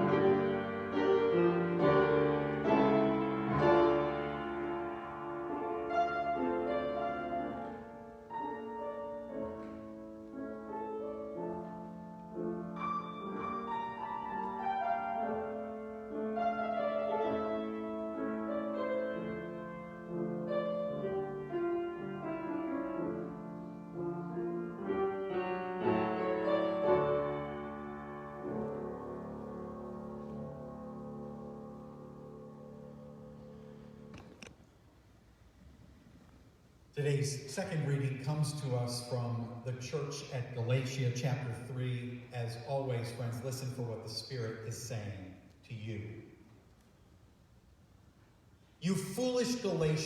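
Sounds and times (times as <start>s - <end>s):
slow keyboard chords: 0.0s - 34.6s.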